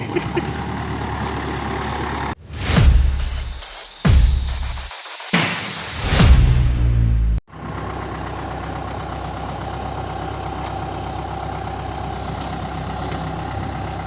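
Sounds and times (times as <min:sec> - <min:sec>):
diesel engine idling: 0:00.0 - 0:02.4, 0:07.5 - 0:14.0.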